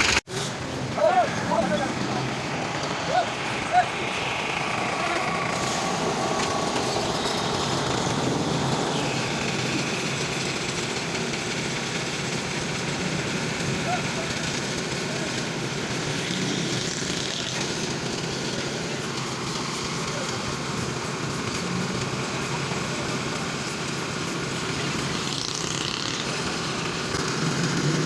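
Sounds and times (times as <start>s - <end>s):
machinery engine idling: 0.0s - 28.0s.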